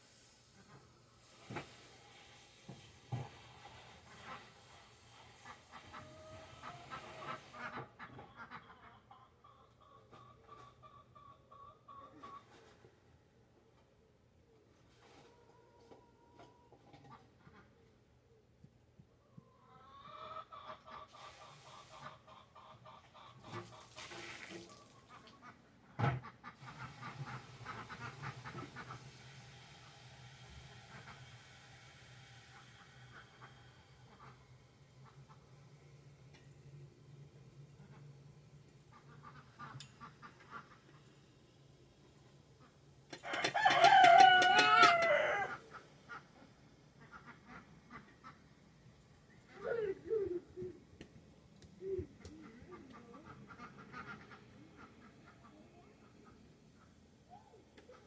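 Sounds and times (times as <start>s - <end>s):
chickens clucking: 2.8s - 13.1s, 19.2s - 24.0s, 24.7s - 29.3s, 30.6s - 58.0s
rooster crowing: 43.2s - 45.6s.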